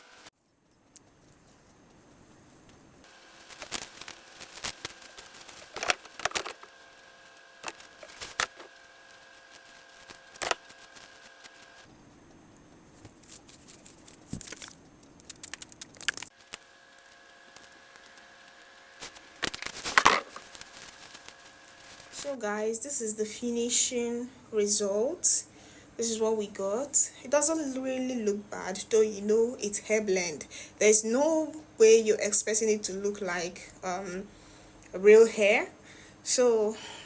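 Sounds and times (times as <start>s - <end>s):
faint steady hum: 0.0s - 37.0s
crinkling handling noises: 0.4s - 22.4s
sharp clicks: 14.6s - 16.6s.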